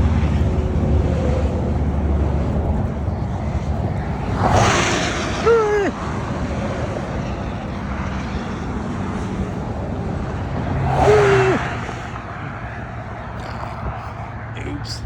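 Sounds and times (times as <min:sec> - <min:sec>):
vehicles passing on highway: 0:00.0 - 0:15.0
man making high-pitched vocal noise: 0:05.4 - 0:06.0.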